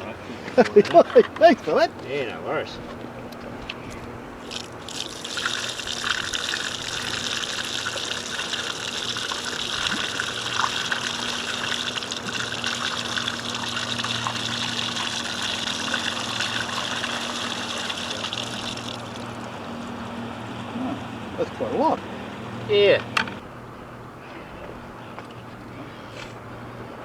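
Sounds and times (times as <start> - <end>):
water pouring and splashing: 4.4 - 19.6.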